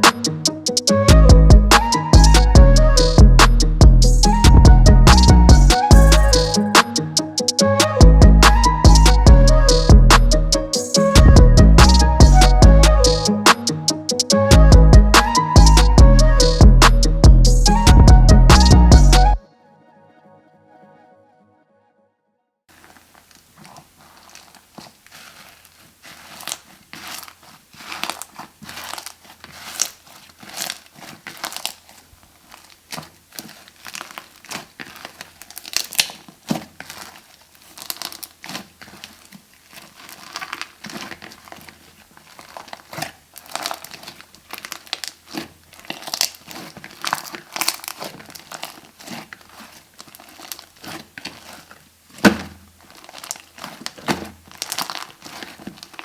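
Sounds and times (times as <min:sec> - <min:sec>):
slime squeezed by hand crackling: 0:23.0 - 0:56.0.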